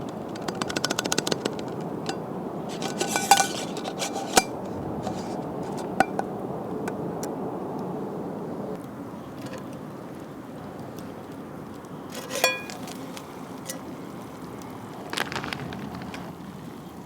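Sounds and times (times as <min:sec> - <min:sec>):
steady background noise: 0:00.0 - 0:17.0
utensil clinking on metal cookware: 0:02.1 - 0:06.2, 0:12.2 - 0:12.8.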